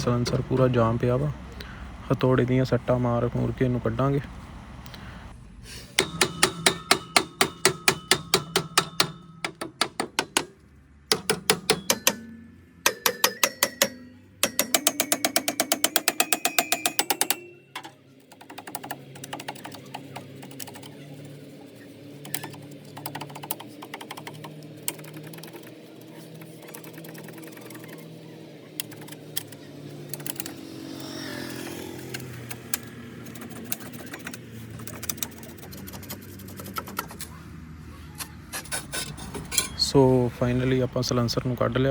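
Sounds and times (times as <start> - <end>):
hammer blows on metal: 5.9 - 21.4.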